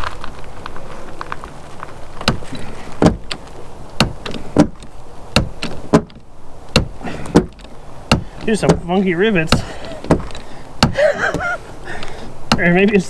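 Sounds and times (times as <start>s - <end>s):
sharp knocks: 2.2s - 3.4s, 4.0s - 8.9s, 9.5s - 11.6s.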